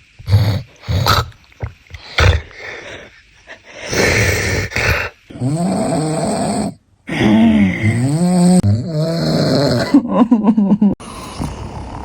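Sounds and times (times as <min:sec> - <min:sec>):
man snoring: 0:00.2 - 0:01.3, 0:03.9 - 0:10.0.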